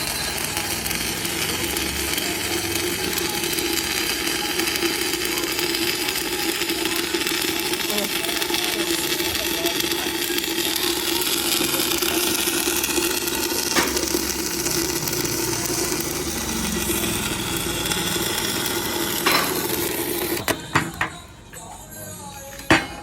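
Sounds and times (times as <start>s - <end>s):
welding arc crackling hiss: 0.0s - 21.3s
constant hum: 5.8s - 23.0s.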